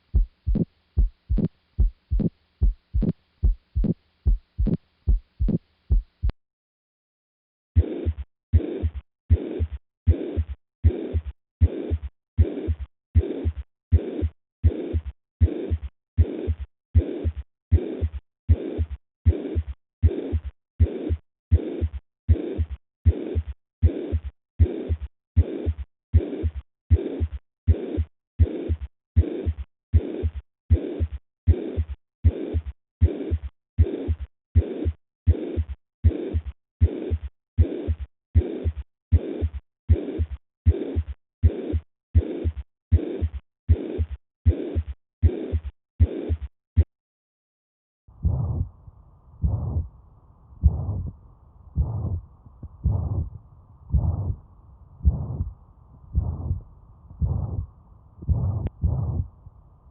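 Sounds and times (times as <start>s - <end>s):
heartbeat with whooshing murmur: 0.0s - 6.4s, 7.8s - 46.9s, 48.1s - 59.9s.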